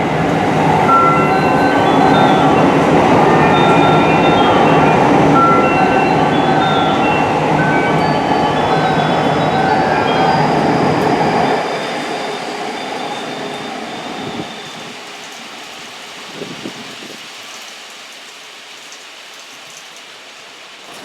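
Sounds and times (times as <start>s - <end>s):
high whining tones: 0.0s - 15.7s
electric train running on track: 0.0s - 16.8s.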